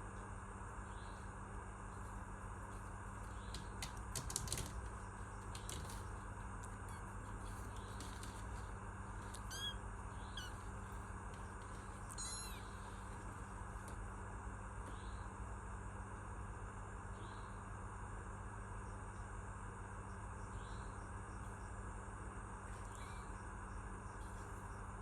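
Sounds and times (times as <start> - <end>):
steady low hum: 0.0 - 25.0
kitten meowing: 9.3 - 10.8, 12.0 - 13.0, 22.8 - 23.3.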